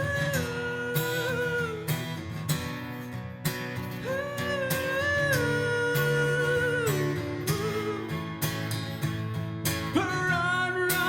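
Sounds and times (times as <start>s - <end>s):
person singing long notes: 0.0s - 1.9s, 4.0s - 8.2s
acoustic guitar strumming: 0.0s - 11.0s.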